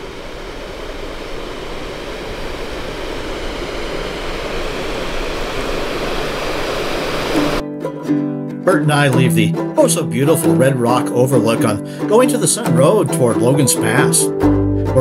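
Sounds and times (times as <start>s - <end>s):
creek water rushing over falls: 0.0s - 7.6s.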